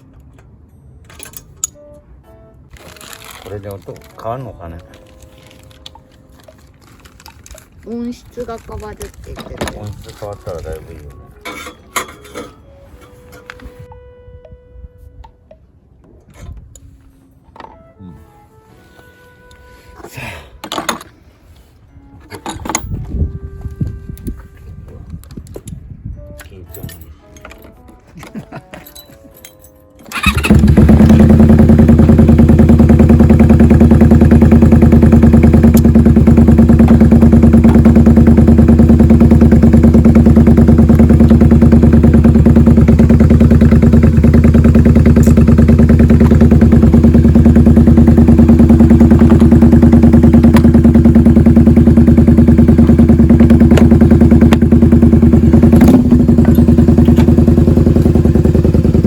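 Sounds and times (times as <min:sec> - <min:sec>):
motorcycle engine starting and idling: 0:02.7 - 0:12.6, 0:30.0 - 0:59.0.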